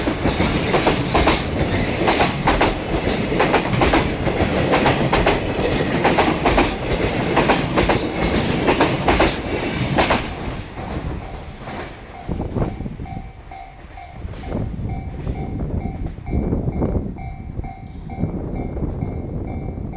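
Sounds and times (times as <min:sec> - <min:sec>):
train wheels clacking over rail joints: 0:00.0 - 0:12.5.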